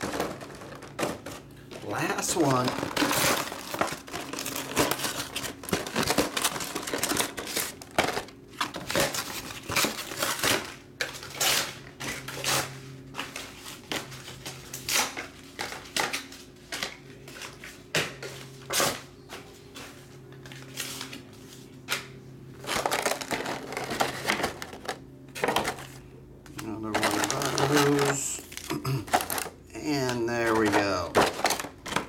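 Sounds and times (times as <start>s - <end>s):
plastic wrap crinkling: 0.0s - 17.6s, 22.6s - 24.9s, 26.8s - 29.6s.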